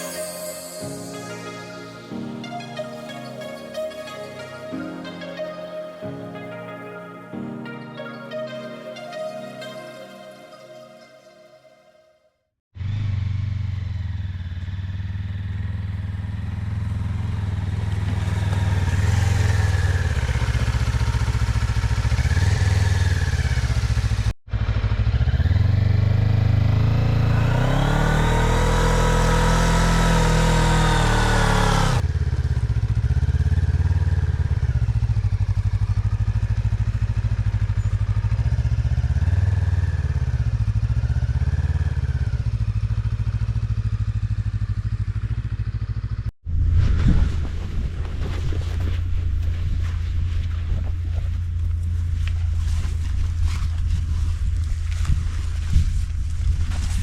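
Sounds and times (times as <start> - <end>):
motorcycle engine running: 12.8 - 46.3, 47.8 - 57.0.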